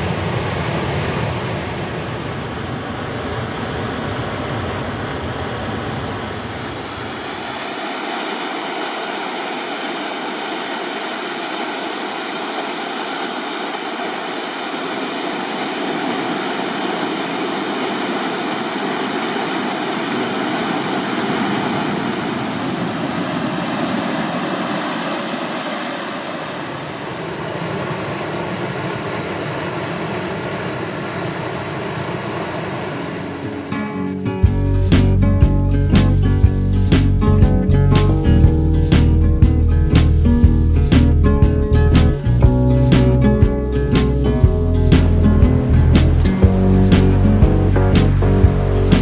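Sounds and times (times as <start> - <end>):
waterfall rushing: 5.9 - 28.5, 44.0 - 49.0.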